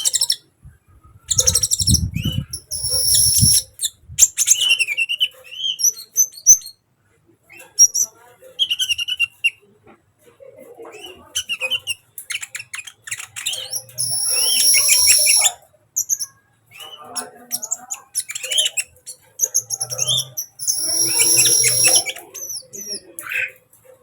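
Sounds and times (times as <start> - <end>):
bird chirping and twittering: 0.0 - 0.4, 1.2 - 6.8, 10.9 - 23.6
bird buzzing trill: 2.6 - 3.6, 14.0 - 15.5, 20.5 - 22.1.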